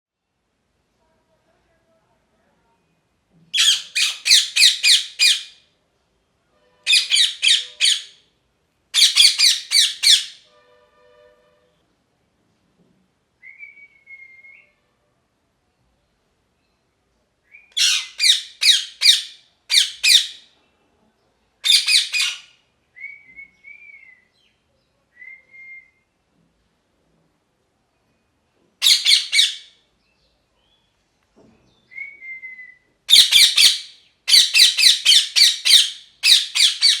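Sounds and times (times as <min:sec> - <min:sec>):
parakeet screeching: 0:03.6 - 0:05.6, 0:06.9 - 0:08.2, 0:09.0 - 0:10.4, 0:17.8 - 0:20.4, 0:21.7 - 0:22.5, 0:28.8 - 0:29.8, 0:33.1 - 0:37.0
quiet whistled bird notes: 0:13.4 - 0:15.0, 0:22.9 - 0:26.2.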